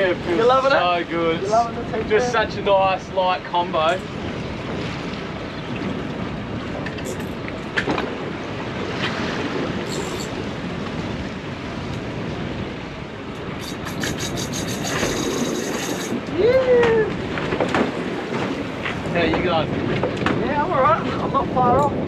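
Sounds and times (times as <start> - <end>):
water rushing around boat: 0.0 - 22.0
rapid high ticks: 13.6 - 16.2.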